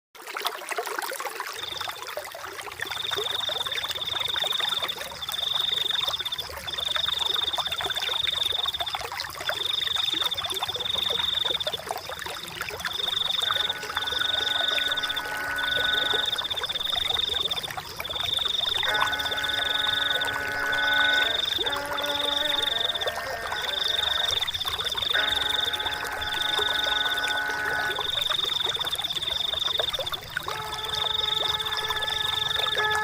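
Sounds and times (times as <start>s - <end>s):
stream water running: 0.2s - 33.0s
soft sustained music notes: 12.9s - 33.0s
high trilling animal call: 13.0s - 33.0s.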